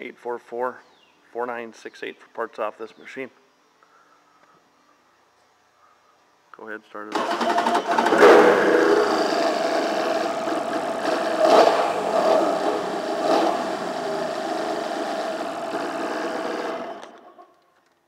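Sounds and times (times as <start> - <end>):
personal watercraft engine running: 7.2 - 17.3.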